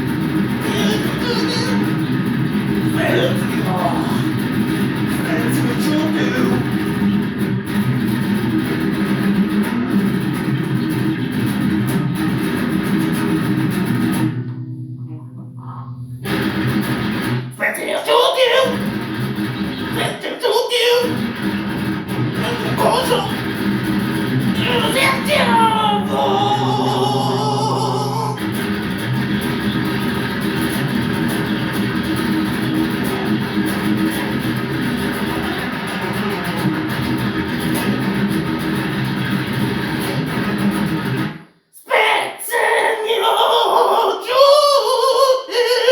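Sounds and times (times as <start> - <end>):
metal band playing: 0.0 - 14.4, 21.1 - 41.3
bass guitar: 0.0 - 17.6, 18.8 - 20.1, 21.0 - 41.5
electric guitar: 0.0 - 17.6, 18.6 - 20.2, 21.0 - 41.7.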